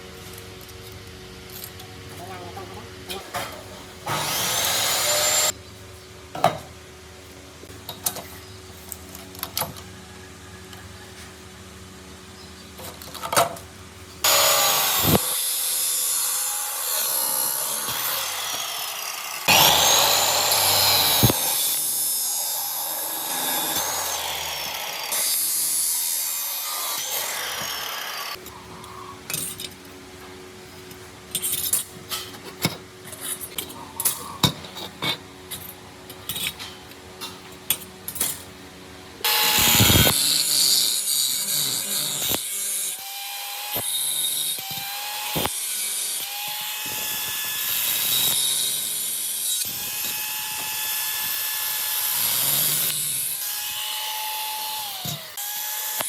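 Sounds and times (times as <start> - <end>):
power tool grinding: 3.3 - 5.6, 14.2 - 29.6, 39.2 - 56.0.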